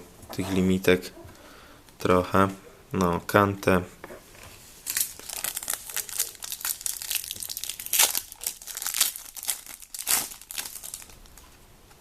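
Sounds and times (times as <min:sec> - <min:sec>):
plastic packet ripping: 0:04.8 - 0:11.4
plastic packet crinkling: 0:04.8 - 0:11.5.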